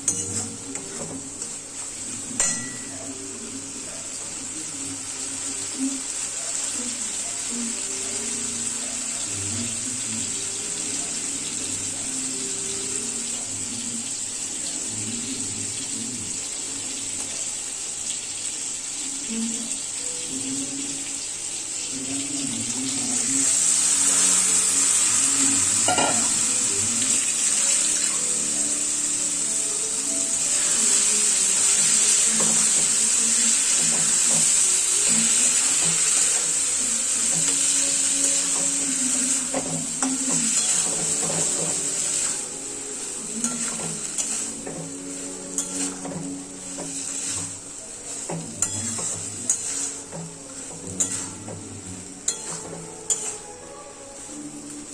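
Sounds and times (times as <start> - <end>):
food sizzling in a pan: 0.0 - 54.9
spoon knocking against pan: 25.9 - 26.2.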